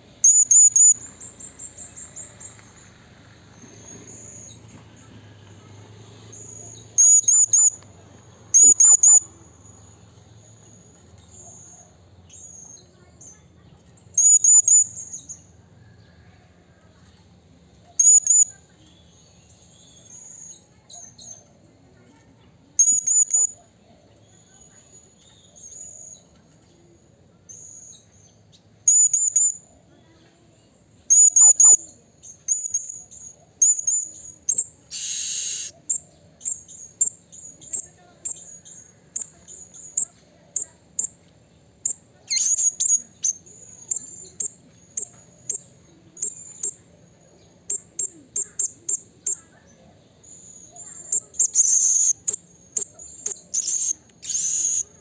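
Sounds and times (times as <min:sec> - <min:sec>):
parrot high-pitched calls: 0:00.2 - 0:01.0, 0:07.0 - 0:07.8, 0:08.6 - 0:09.2, 0:33.6 - 0:36.6, 0:42.2 - 0:44.1, 0:50.7 - 0:55.0
parrot short chirps: 0:33.6 - 0:36.0, 0:42.3 - 0:43.4, 0:51.1 - 0:54.8.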